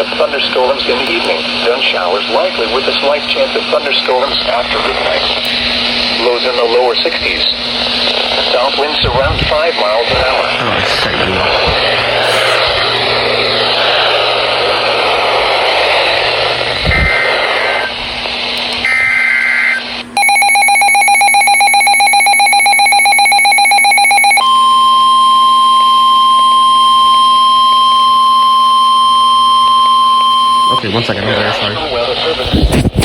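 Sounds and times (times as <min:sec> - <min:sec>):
static hiss: 0:04.2 - 0:20.0
steady single-pitch warning tone: 0:18.8 - 0:30.8
fast-pulsing alarm beep: 0:20.2 - 0:30.8.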